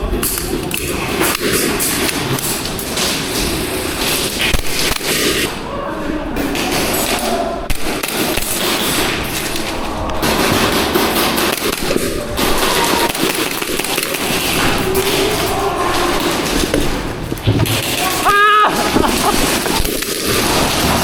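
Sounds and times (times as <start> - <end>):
airsoft pistols firing: 6.5 - 15.4
players shouting faintly: 8.6 - 19.8.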